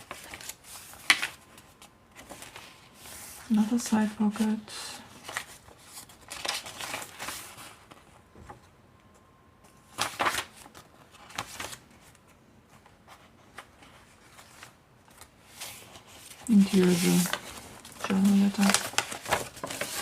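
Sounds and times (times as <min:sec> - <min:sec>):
paper rustling: 0:00.0 - 0:08.6, 0:09.8 - 0:20.0.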